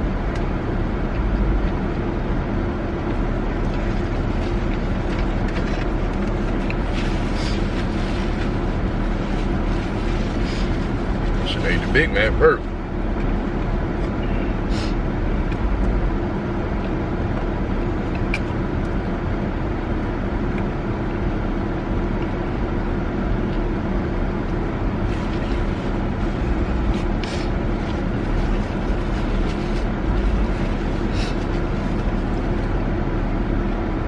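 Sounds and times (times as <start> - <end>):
car engine hum inside: 0.0 - 34.0.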